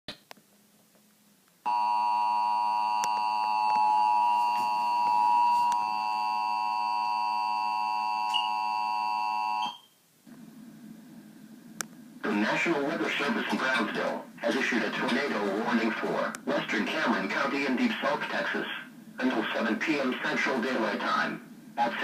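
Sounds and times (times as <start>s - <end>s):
two-tone alarm: 1.7s - 10.0s.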